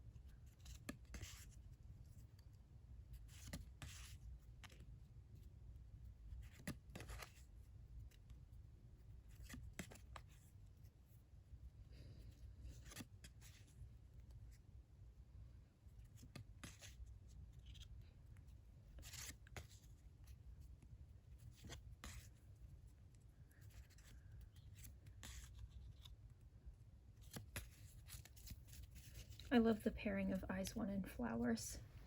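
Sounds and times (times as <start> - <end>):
photo cards rustling and sliding: 6.4 - 8.3, 9.3 - 10.7, 12.3 - 14.7, 16.0 - 20.8, 21.4 - 26.5, 27.1 - 29.9.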